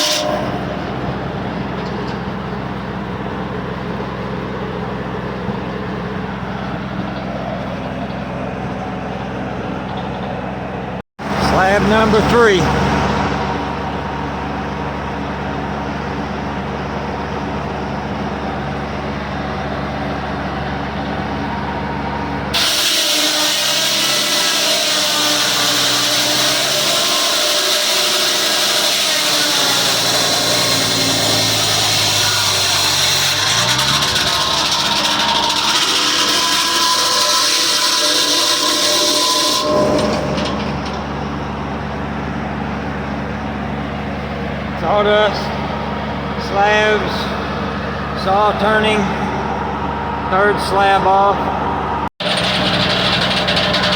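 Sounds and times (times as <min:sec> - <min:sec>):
saw blade cutting log: 0:00.0 - 0:02.5, 0:11.3 - 0:13.0, 0:22.5 - 0:41.6, 0:52.2 - 0:53.9
sawmill engine running: 0:00.0 - 0:53.9.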